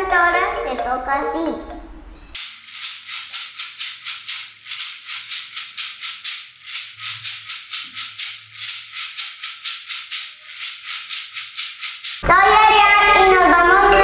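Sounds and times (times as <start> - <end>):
seed rattle shaking: 2.4 - 12.2.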